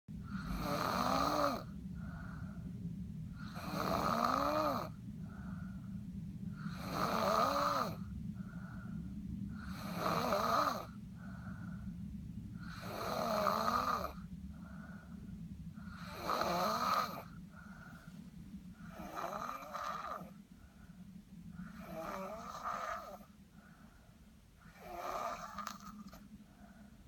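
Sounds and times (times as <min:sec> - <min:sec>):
person snoring: 0:00.3 - 0:02.4, 0:03.4 - 0:05.4, 0:06.6 - 0:08.0, 0:09.6 - 0:11.0, 0:12.6 - 0:14.3, 0:15.8 - 0:17.4, 0:18.8 - 0:20.4, 0:21.6 - 0:23.3, 0:24.7 - 0:26.2
soft breath out: 0:01.8 - 0:02.8, 0:05.1 - 0:06.7, 0:08.0 - 0:09.7, 0:11.0 - 0:12.7, 0:14.4 - 0:16.1, 0:17.2 - 0:19.0, 0:20.1 - 0:21.9, 0:22.9 - 0:24.8, 0:25.6 - 0:27.0.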